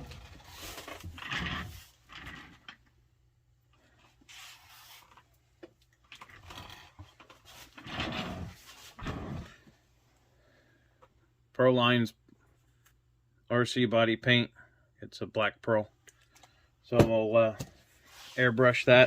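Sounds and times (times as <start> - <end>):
rubbing and rustling of objects: 0.0 - 2.8, 3.7 - 9.7, 17.7 - 19.0.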